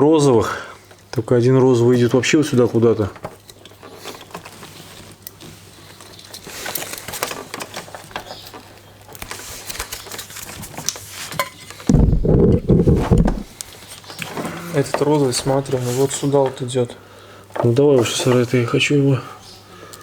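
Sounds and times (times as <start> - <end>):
wires rustling: 2.9 - 16.8
loud muffled low-pitched sound: 11.9 - 13.5.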